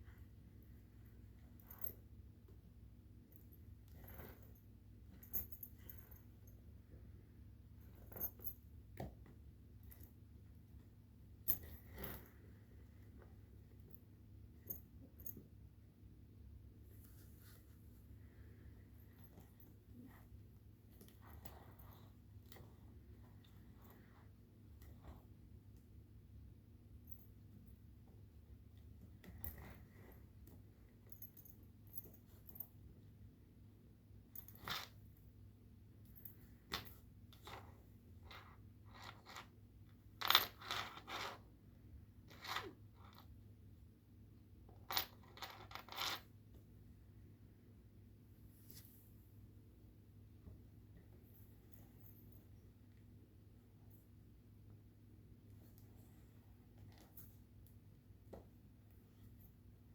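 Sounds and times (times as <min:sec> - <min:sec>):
faint low hum: 0:00.0 - 0:59.9
faint rustling: 0:16.8 - 0:25.5.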